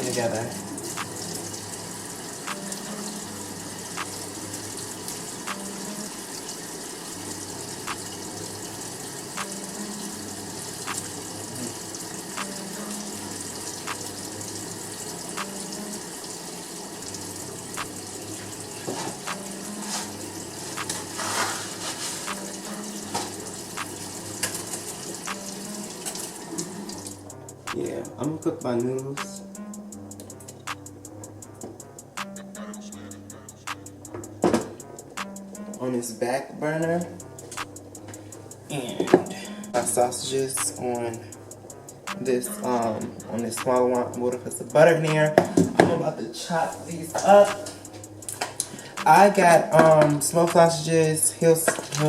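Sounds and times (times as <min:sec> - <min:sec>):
tap running into sink: 0:18.8 - 0:20.0, 0:22.3 - 0:27.1.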